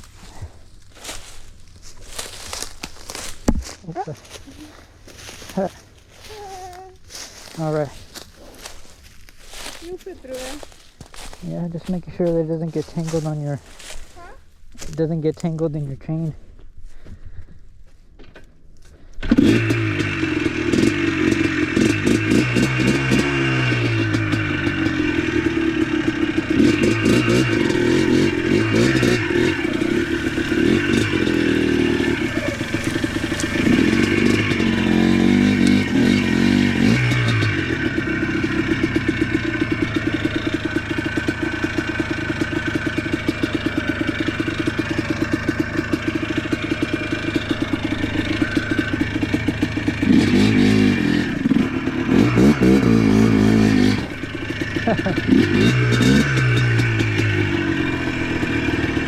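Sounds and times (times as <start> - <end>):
atv engine revving: 19.2 - 59.0.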